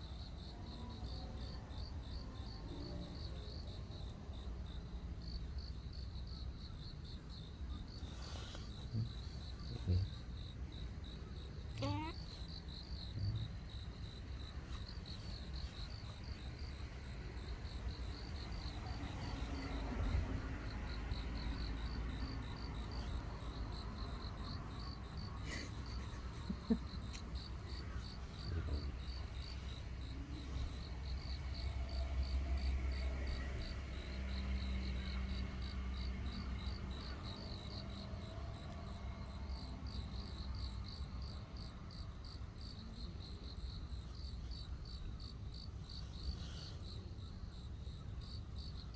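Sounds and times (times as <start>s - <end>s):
crickets chirping: 0.0s - 48.9s.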